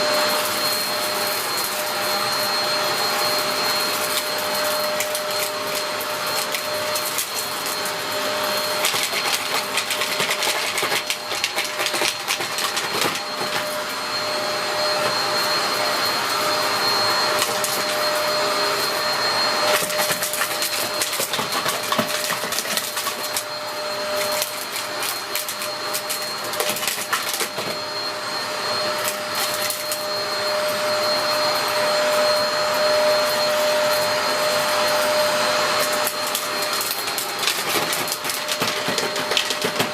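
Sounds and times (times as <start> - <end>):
vacuum cleaner whine: 0.0 - 39.9
debris clicking in vacuum: 19.7 - 23.5, 36.0 - 39.9.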